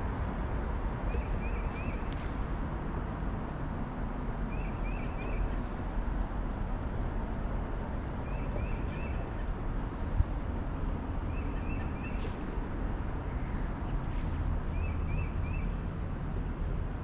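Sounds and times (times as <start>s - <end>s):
songbird calling: 4.5s - 5.7s, 8.2s - 9.5s, 11.3s - 12.4s.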